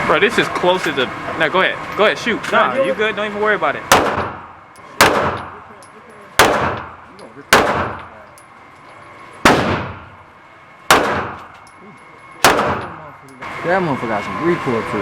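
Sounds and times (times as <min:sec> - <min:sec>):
gunshots with echo: 0:03.9 - 0:04.4, 0:05.0 - 0:05.5, 0:06.4 - 0:08.0, 0:09.4 - 0:10.0, 0:10.9 - 0:11.5, 0:12.4 - 0:13.0.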